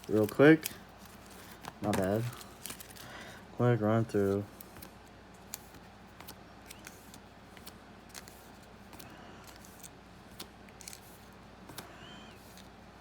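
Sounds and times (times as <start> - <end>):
cards flipping with small clicks: 4.6 - 11.1, 11.7 - 12.7.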